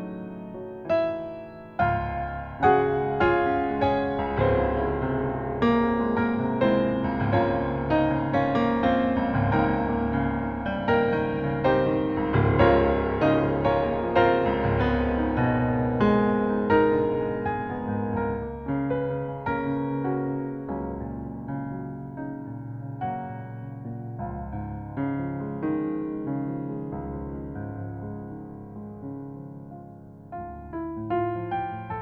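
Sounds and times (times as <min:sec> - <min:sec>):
gentle piano music: 0:00.0 - 0:32.0.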